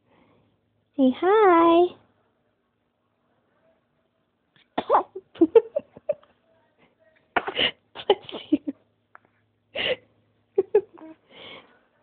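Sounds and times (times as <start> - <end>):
baby sneezing: 4.8 - 5.1, 7.4 - 7.7.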